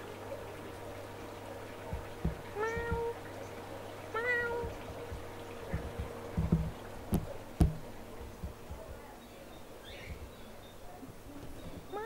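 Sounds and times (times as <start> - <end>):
steady low hum: 0.0 - 12.0
soft low thuds: 1.8 - 3.2, 4.6 - 9.1
person imitating cat meows: 2.6 - 3.2.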